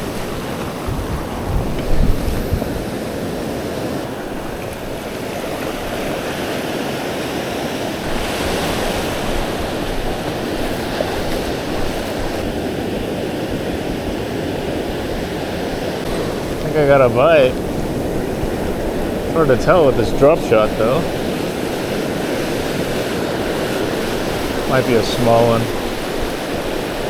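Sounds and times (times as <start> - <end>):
ocean surf on sandy beach: 0.0 - 27.0
wind on microphone: 0.0 - 27.0.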